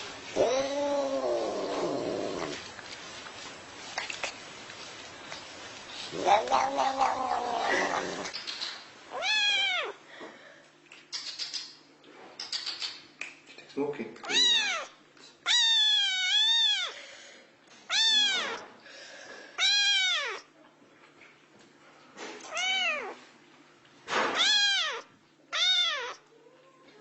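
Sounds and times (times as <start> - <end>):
cat meowing: 0.4 - 2.6, 6.1 - 8.3, 9.1 - 10.0, 14.3 - 17.0, 17.9 - 18.7, 19.6 - 20.5, 22.4 - 23.2, 24.3 - 27.0.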